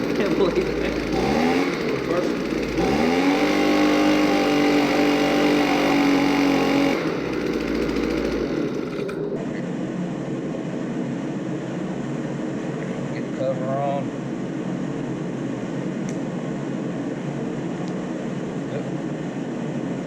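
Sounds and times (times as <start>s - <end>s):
leaf blower engine revving: 0.0s - 11.4s.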